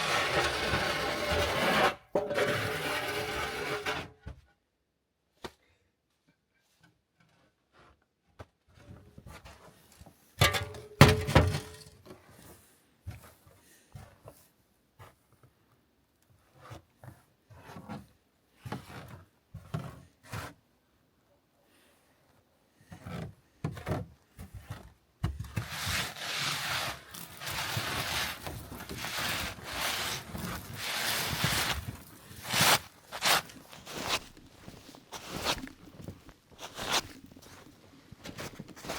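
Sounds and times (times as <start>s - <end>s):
rustling and crunching: 25.4s - 38.9s.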